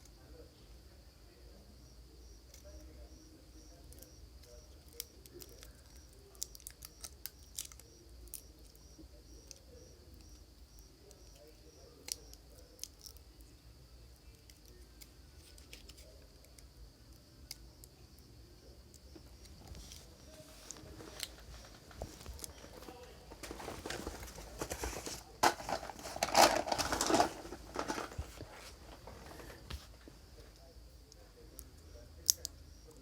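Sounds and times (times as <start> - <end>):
faint pulsing high whine: 0.0 - 33.0
small parts and tools clicking: 3.9 - 13.5, 31.1 - 32.6.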